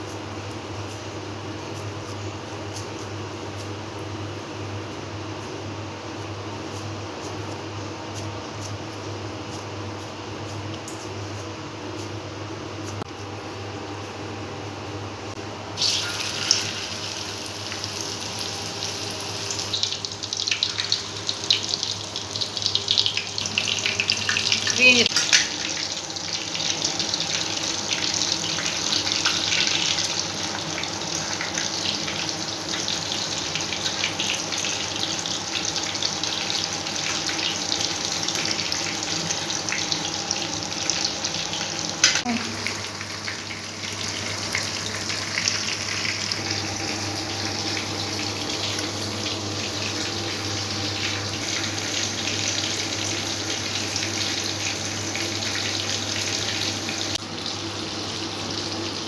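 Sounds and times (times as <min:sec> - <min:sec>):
kebabs sizzling in hot oil: 0:15.7 - 0:59.0.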